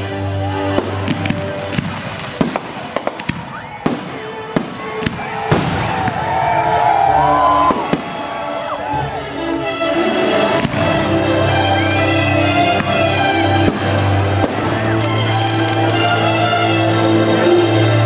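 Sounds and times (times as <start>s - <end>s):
music playing: 0.0s - 18.0s
fireworks bangs and crackles: 0.7s - 6.4s, 7.6s - 8.4s, 10.6s - 11.0s, 13.6s - 16.0s.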